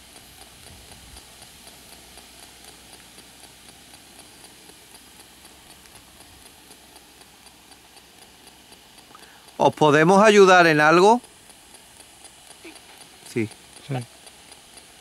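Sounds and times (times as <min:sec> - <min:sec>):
small scanning ticks: 0:00.0 - 0:15.0
radio static hiss: 0:12.6 - 0:14.2.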